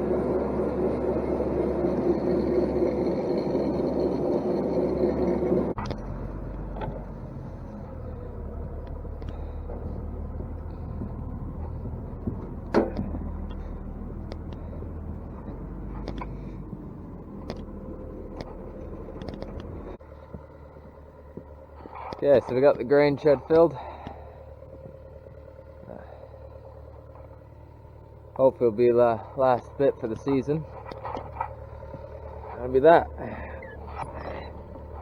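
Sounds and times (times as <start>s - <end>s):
grain mill running: 0.0s - 35.0s
low motor rumble: 0.0s - 35.0s
clicks and knocks: 8.7s - 16.8s.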